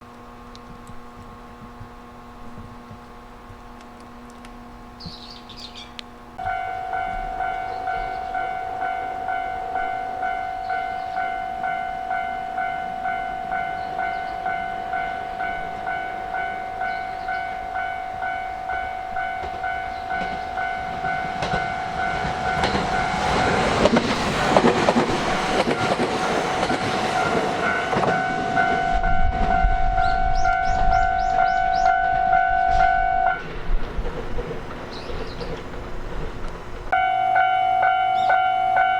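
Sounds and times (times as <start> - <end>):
freight train passing: 0.0 - 38.9
level crossing alarm dinging: 6.4 - 33.4, 36.9 - 38.9.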